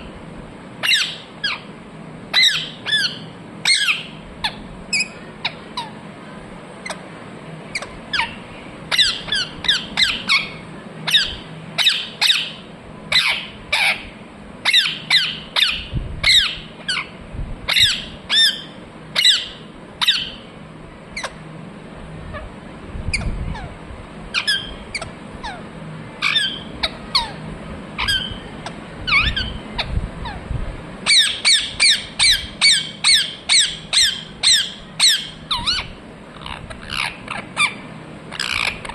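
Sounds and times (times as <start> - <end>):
parrot screeching: 0.8 - 1.7, 2.3 - 6.0, 7.7 - 14.1, 14.7 - 17.1, 17.7 - 20.4, 24.4 - 25.6, 26.2 - 27.4, 28.0 - 28.4, 29.1 - 30.4, 31.1 - 38.9.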